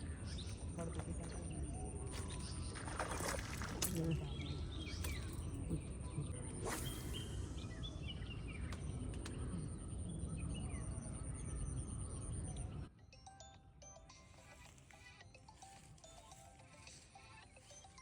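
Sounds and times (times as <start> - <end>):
small birds chirping: 0.0 - 12.9
faint background music: 0.0 - 18.0.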